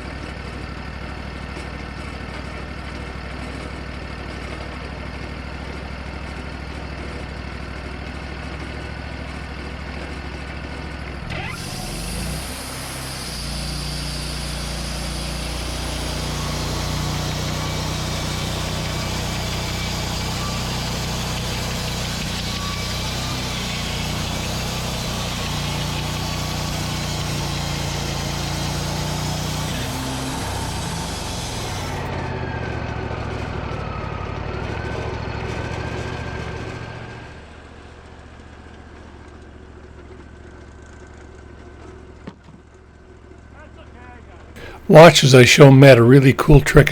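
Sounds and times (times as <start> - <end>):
sawmill engine running: 10.7 - 33.0, 44.6 - 46.9
hiss of mill working: 11.9 - 32.1.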